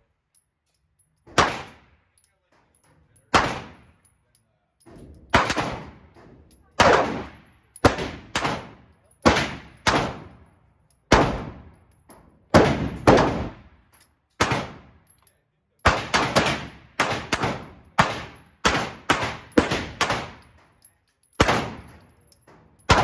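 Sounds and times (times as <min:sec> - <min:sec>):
echoing gunshots: 0:01.4 - 0:01.9, 0:03.3 - 0:03.9, 0:05.3 - 0:06.1, 0:06.8 - 0:10.4, 0:11.1 - 0:11.7, 0:12.5 - 0:13.8, 0:14.4 - 0:15.0, 0:15.9 - 0:20.4, 0:21.4 - 0:22.0.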